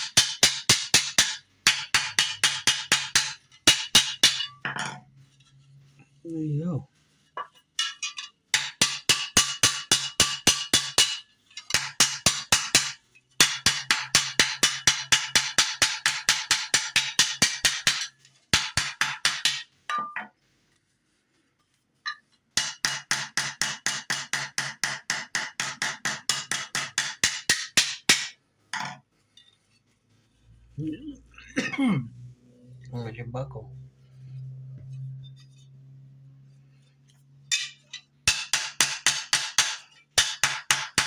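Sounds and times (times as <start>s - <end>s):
rapid hammer blows on metal: 0.0s - 4.5s, 8.5s - 19.7s, 38.3s - 41.0s.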